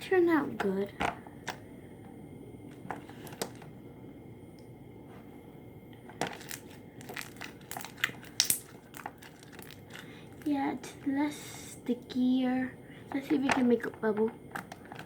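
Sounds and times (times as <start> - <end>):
hands kneading sticky slime: 6.2 - 12.0
slime clicks and pops: 8.0 - 8.7.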